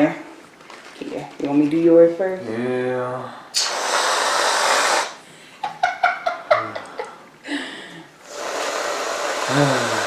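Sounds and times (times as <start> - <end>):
whipped cream can spraying: 3.6 - 5.2
people laughing: 5.6 - 7.2.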